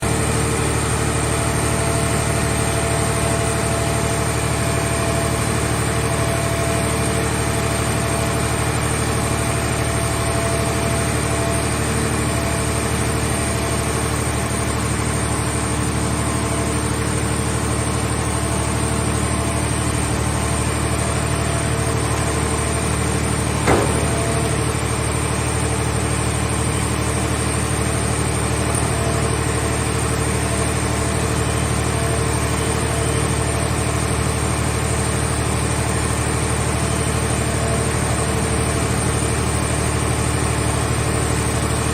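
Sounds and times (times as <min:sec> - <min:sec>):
hydraulic power unit humming: 0:00.0 - 0:41.9
sharp knock: 0:23.6 - 0:24.7.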